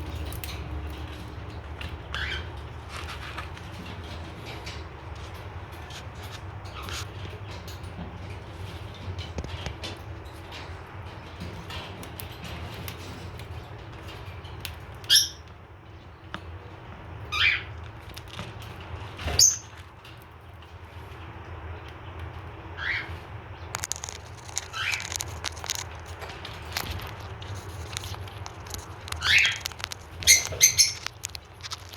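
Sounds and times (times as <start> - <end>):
cockatiel shrill calls: 22.8 - 23.1
seeds cracking in beak: 23.7 - 31.9.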